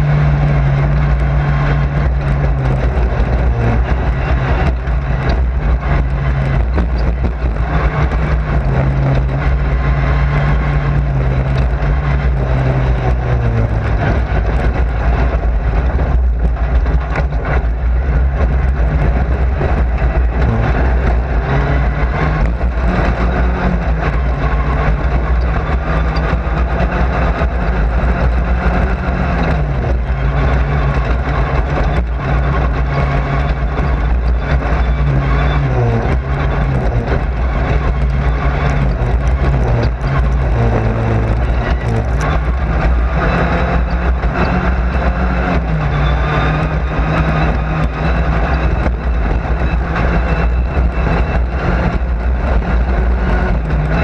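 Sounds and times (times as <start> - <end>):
race car engine revving: 0.0 - 54.0.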